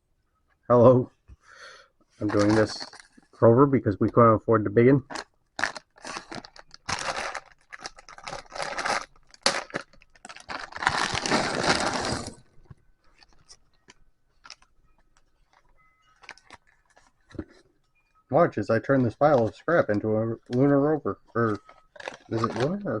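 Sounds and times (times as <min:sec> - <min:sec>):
plastic packaging crinkling and tearing: 0:02.2 - 0:03.3, 0:05.1 - 0:17.6, 0:18.9 - 0:23.0.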